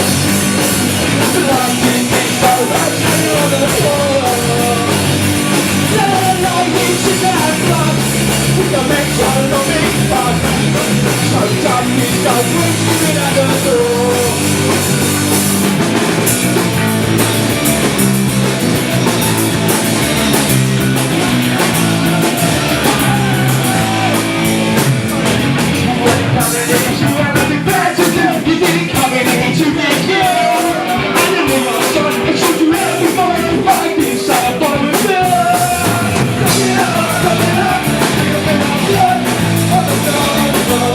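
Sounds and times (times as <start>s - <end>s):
live punk rock band: 0.0s - 40.9s
person singing: 1.0s - 14.8s, 21.2s - 24.8s, 25.8s - 40.9s.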